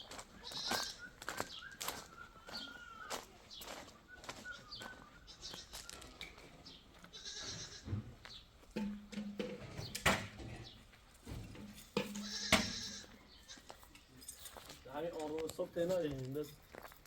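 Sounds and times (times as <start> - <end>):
goats and sheep bleating: 0.3 - 1.3, 2.3 - 3.4, 5.2 - 6.0, 7.0 - 8.1, 12.0 - 13.9
sharp knocks: 8.8 - 10.7, 11.3 - 13.0.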